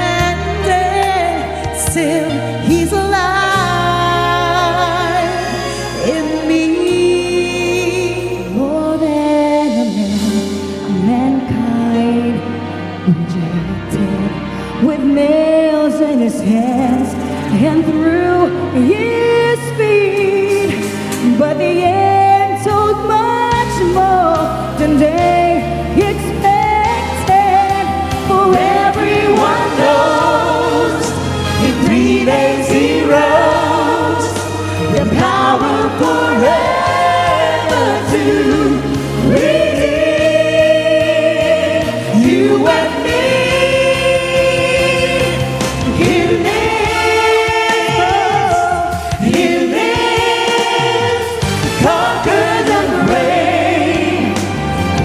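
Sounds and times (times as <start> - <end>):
choir singing gospel: 0.0 - 55.0
instrumental accompaniment: 0.0 - 55.0.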